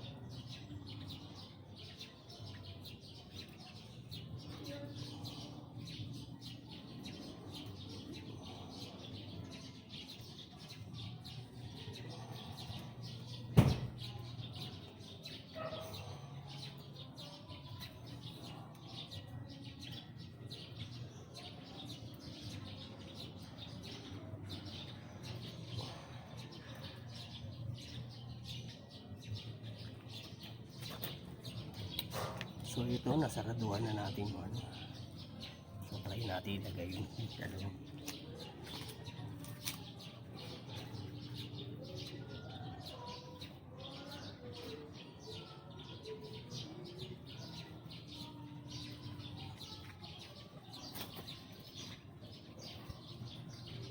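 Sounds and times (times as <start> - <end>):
birds chirping: 0.0 - 53.9.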